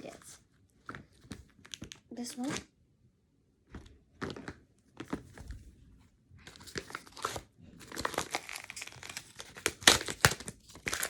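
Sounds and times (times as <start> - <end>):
paper crinkling and tearing: 6.5 - 11.0.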